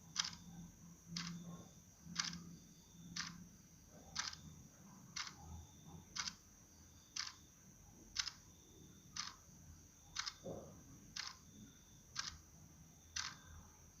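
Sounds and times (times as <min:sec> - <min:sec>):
faint high steady tone: 0:00.0 - 0:14.0
clock-like ticking: 0:00.1 - 0:00.5, 0:01.1 - 0:01.5, 0:02.2 - 0:02.4, 0:03.2 - 0:03.4, 0:04.2 - 0:04.4, 0:05.2 - 0:05.4, 0:06.2 - 0:06.4, 0:07.2 - 0:07.4, 0:08.2 - 0:08.4, 0:09.2 - 0:09.4, 0:10.2 - 0:10.5, 0:11.2 - 0:11.4, 0:12.2 - 0:12.4, 0:13.2 - 0:13.4.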